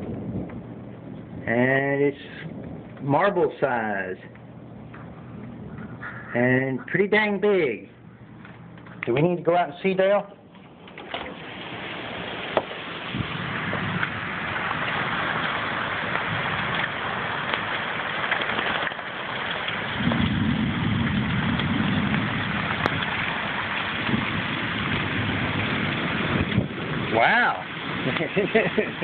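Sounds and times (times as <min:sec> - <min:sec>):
deep rumble: 0:00.0 - 0:03.6, 0:04.2 - 0:07.0, 0:11.8 - 0:29.0
hail clattering on a patio: 0:10.7 - 0:29.0.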